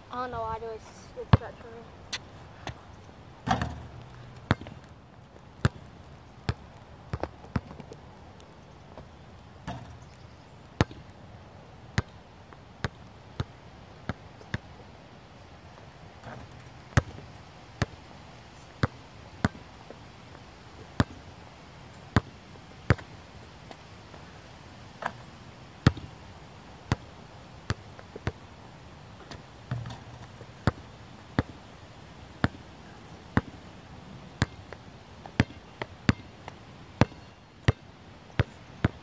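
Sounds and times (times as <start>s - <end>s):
basketball bouncing: 3.4s - 4.9s, 5.6s - 5.9s, 6.5s - 8.0s, 9.7s - 10.0s, 10.8s - 11.1s, 16.2s - 17.2s, 21.0s - 21.2s, 25.8s - 26.1s, 29.3s - 31.6s, 34.4s - 34.7s, 35.3s - 37.8s, 38.4s - 39.0s.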